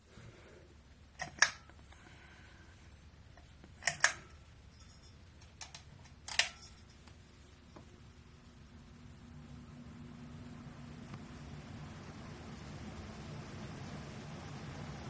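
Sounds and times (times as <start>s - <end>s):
faint low hum: 0.0s - 15.0s
pull-chain switch clicks: 1.2s - 1.8s, 3.8s - 4.4s, 5.4s - 6.7s.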